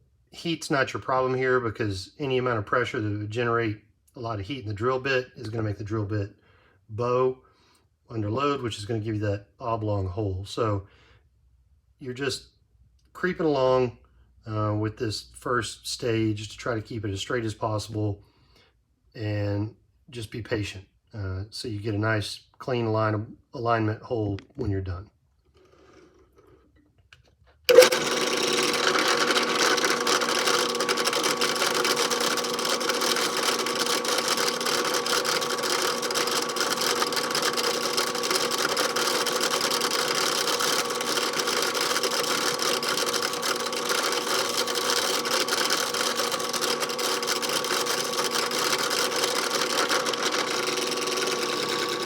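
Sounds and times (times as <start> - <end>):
drill press drilling steel: 27.7 - 52.0.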